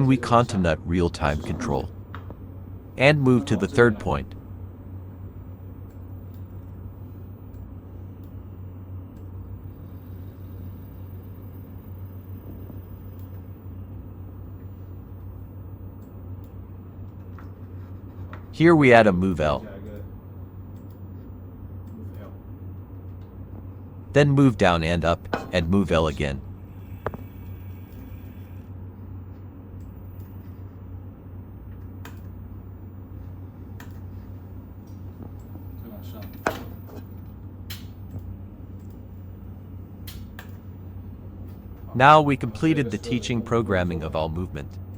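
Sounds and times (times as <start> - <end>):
steady low hum: 0.0 - 44.9
servo motors humming: 26.6 - 28.8.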